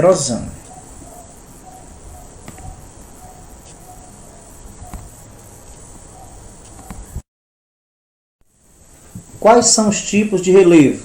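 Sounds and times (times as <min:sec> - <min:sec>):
background hiss: 0:00.0 - 0:07.2, 0:08.4 - 0:11.0
soft clicks: 0:06.6 - 0:07.1.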